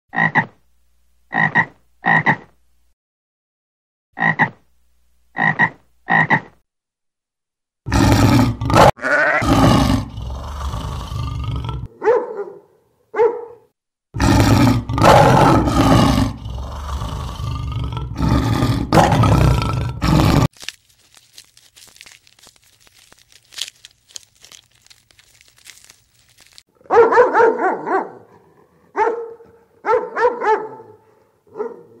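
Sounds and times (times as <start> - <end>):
animal croaking calls: 7.9 - 11.9, 14.2 - 20.5.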